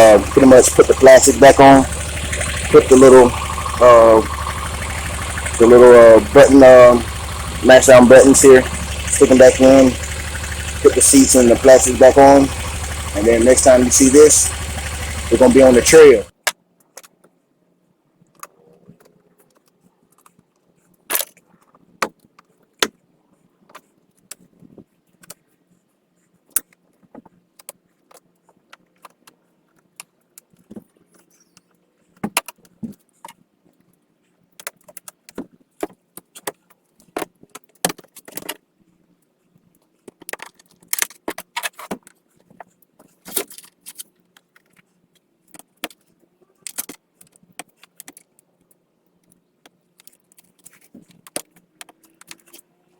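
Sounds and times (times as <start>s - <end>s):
plastic panels clicking and rattling: 34.5s - 38.7s, 39.8s - 48.4s, 49.2s - 52.6s.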